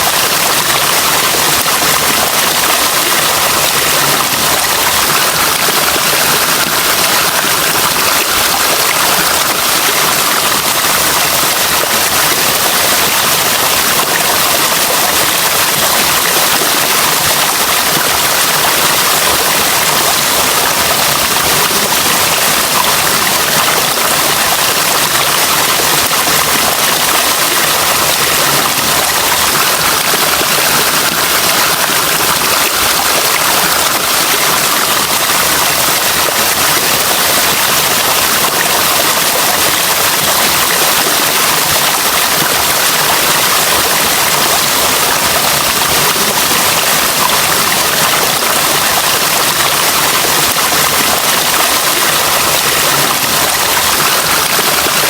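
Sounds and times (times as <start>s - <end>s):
water rushing: 0.0s - 55.0s.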